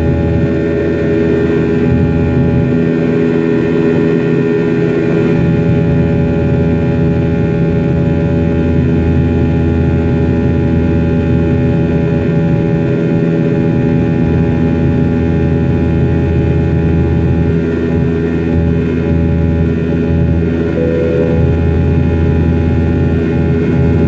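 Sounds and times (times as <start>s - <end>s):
jet engine drone in cabin: 17.5s - 24.0s
steady whining tones: 20.5s - 23.6s.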